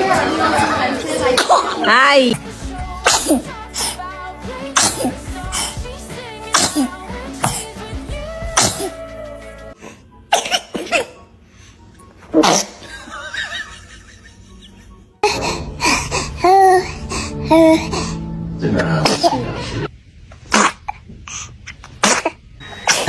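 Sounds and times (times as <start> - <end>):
background music: 0.0 - 19.9
baby sneezing: 3.0 - 3.4, 4.7 - 5.2, 6.5 - 7.6, 8.6 - 9.0, 10.3 - 11.2, 12.4 - 12.8, 20.4 - 23.0.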